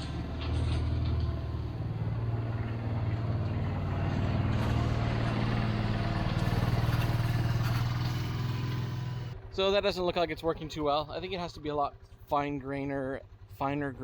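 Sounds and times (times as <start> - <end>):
drag scraping over loose soil: 0.0 - 9.4
utility vehicle engine running: 0.0 - 14.0.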